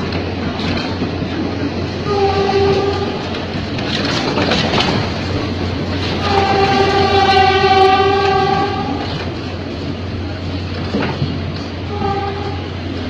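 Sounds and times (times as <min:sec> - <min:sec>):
clicks over rail joints: 0:00.0 - 0:07.2
electric train running on rails: 0:00.0 - 0:13.0
train horn blast: 0:02.0 - 0:03.3, 0:06.2 - 0:09.1, 0:11.9 - 0:12.8.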